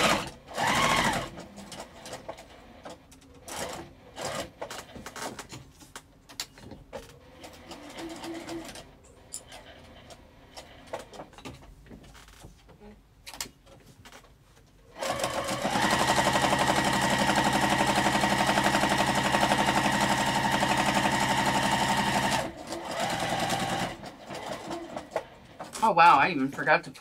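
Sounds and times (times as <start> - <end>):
sewing machine stitching: 0.0 - 5.5, 7.1 - 11.2, 14.9 - 25.8.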